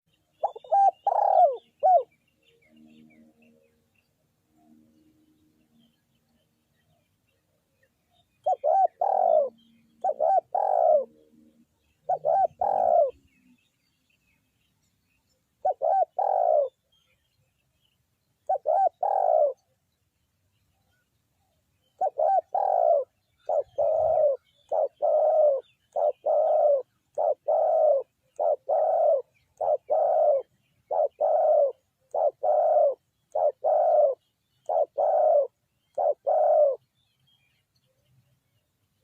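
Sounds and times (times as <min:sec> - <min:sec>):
dove cooing: 0:00.3 - 0:02.2, 0:08.4 - 0:13.3, 0:15.6 - 0:16.8, 0:18.4 - 0:19.7, 0:21.9 - 0:36.8.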